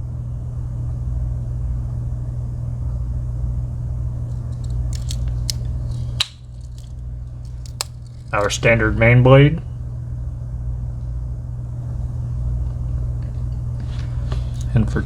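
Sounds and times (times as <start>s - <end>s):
steady low hum: 0.0s - 15.0s
pocket knife tools clicking shut: 4.6s - 6.9s.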